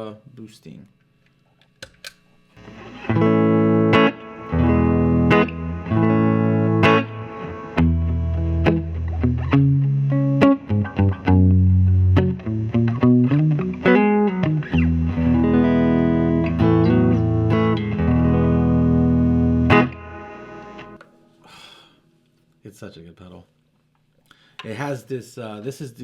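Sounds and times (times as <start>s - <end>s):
electric guitar chords and licks: 2.6s - 21.1s.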